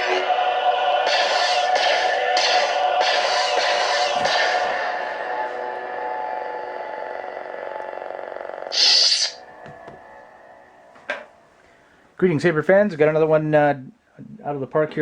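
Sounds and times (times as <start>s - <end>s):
lightsaber hum: 0.0s - 11.5s.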